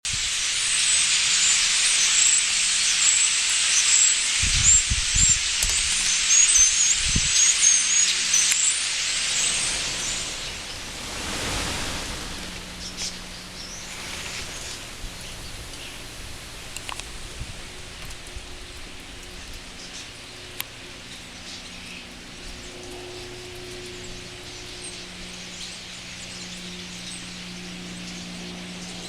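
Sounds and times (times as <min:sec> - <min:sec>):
large flock of birds chattering: 0:00.2 - 0:29.0.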